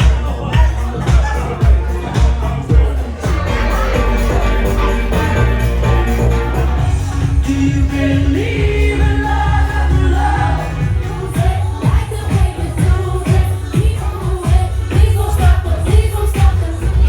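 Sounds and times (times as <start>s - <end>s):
pop song with vocals: 0.0s - 17.0s
steady beat and heavy bass: 0.0s - 17.0s.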